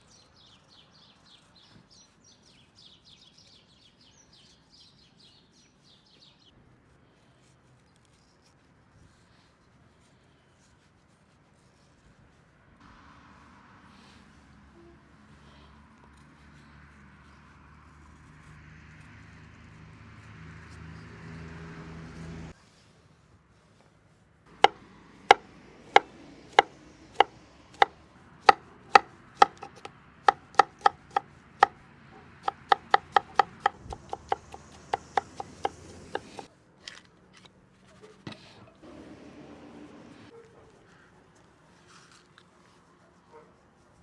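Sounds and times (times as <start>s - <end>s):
knife chopping on wooden board: 24.5s - 31.2s, 32.4s - 36.5s.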